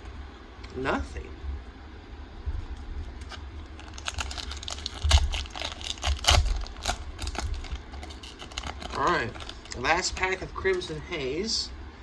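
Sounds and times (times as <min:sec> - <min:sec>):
trading cards clicking and rustling: 0:03.2 - 0:09.8.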